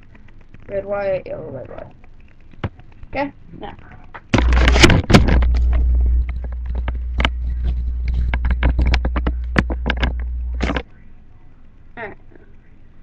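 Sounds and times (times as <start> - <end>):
low handling rumble on microphone: 3.8 - 11.8.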